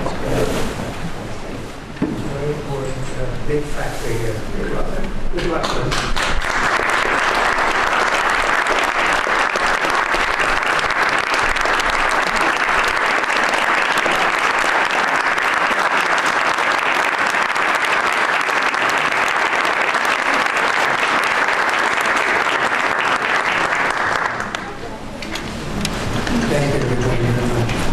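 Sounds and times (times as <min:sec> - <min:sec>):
large audience applause: 0:05.5 - 0:24.9.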